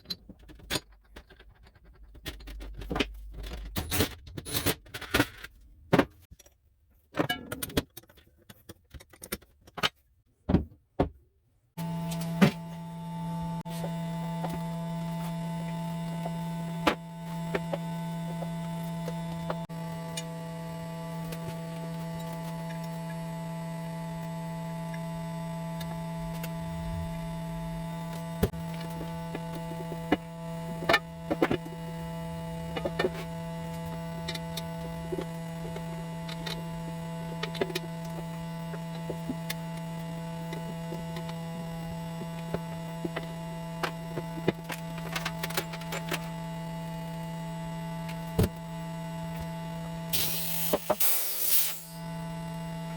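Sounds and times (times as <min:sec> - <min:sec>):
steady electrical hum: 0:24.5 - 0:40.6.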